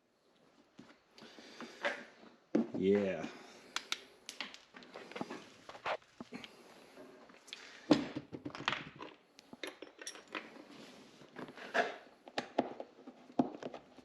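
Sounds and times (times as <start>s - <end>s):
metal hardware clinking: 9.6s - 10.4s.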